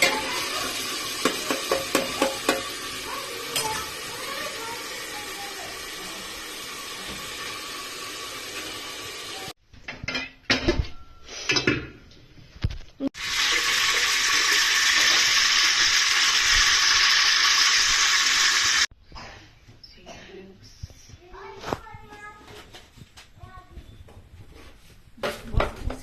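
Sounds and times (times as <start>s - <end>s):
kitchen utensils clattering: 0.0s - 4.8s, 9.8s - 12.1s
oil sizzling in a pan: 0.0s - 9.6s, 13.2s - 18.9s.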